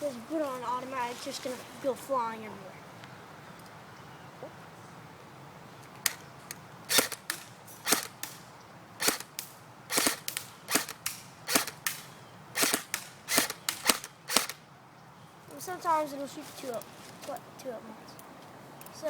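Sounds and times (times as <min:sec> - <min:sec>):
airsoft gun single shots: 0:06.9 - 0:08.4, 0:09.0 - 0:14.6.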